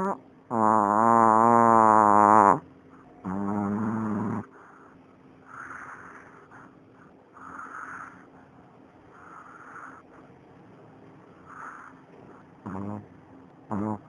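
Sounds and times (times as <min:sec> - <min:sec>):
loud pitched snore: 0:00.0 - 0:02.6, 0:03.2 - 0:04.5, 0:12.6 - 0:13.1, 0:13.7 - 0:14.0
soft breathy snores: 0:03.2 - 0:08.5, 0:09.1 - 0:10.3, 0:11.4 - 0:13.1, 0:13.7 - 0:14.0.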